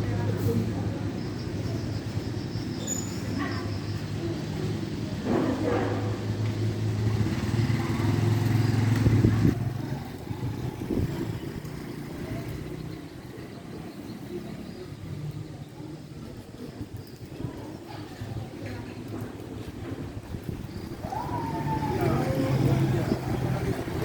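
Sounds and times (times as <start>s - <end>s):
passing vehicle engine hum: 4.8s - 15.6s, 20.7s - 24.0s.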